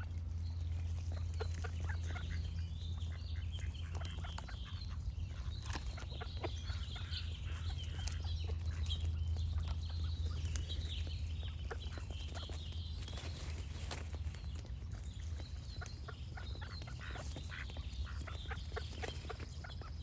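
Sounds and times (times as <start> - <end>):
small birds chirping: 0.0 - 20.0
steady low hum: 0.0 - 20.0
ducks quacking: 1.1 - 10.5, 15.6 - 20.0.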